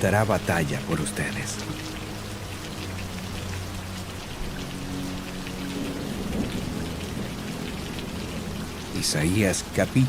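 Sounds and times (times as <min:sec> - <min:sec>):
steady rain falling: 0:00.0 - 0:10.0
low rumble of thunder: 0:05.4 - 0:09.2.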